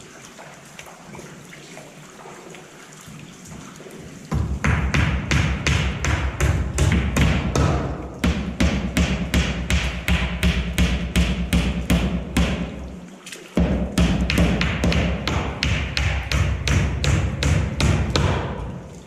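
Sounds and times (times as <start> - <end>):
nails hammered into plywood: 4.3 - 12.7, 13.6 - 18.6.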